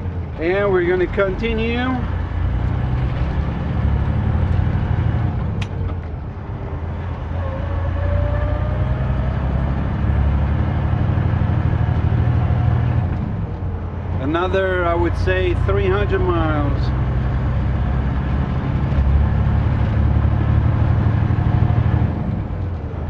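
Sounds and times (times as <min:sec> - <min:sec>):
truck diesel engine rumbling: 0:00.0 - 0:23.0.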